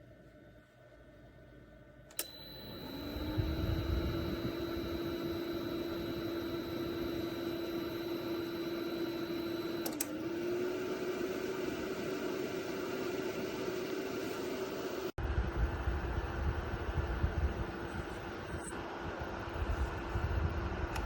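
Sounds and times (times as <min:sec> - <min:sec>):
heater fan humming: 0:00.1 - 0:21.0
heater switch click: 0:02.1 - 0:07.5, 0:09.6 - 0:10.2.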